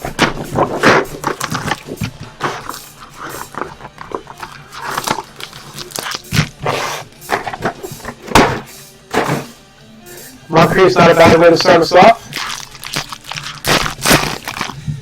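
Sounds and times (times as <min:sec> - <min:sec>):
foil wrapper ripping and crinkling: 0:00.0 - 0:06.6, 0:11.4 - 0:14.9
box tearing open: 0:00.0 - 0:07.8, 0:12.3 - 0:14.8.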